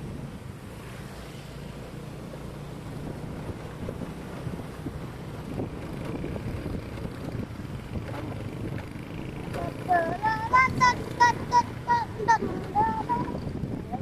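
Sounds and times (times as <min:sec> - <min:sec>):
vehicle engines and tyres rumbling: 0:00.0 - 0:14.0
wind on microphone: 0:02.9 - 0:14.0.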